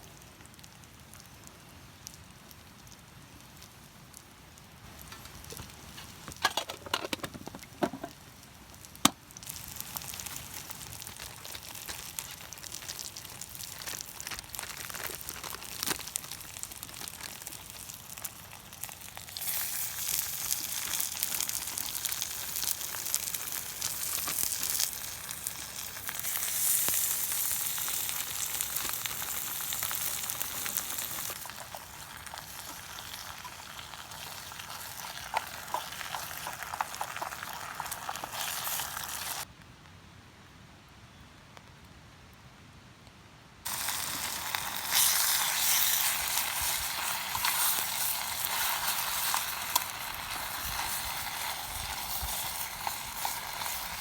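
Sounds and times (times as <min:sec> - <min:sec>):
food sizzling in frying pan: 0:09.4 - 0:39.5, 0:43.7 - 0:54.0.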